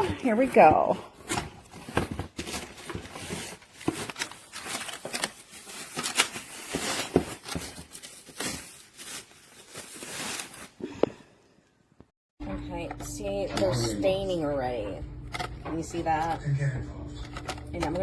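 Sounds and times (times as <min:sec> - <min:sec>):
packaging tearing and crinkling: 0:01.2 - 0:10.8.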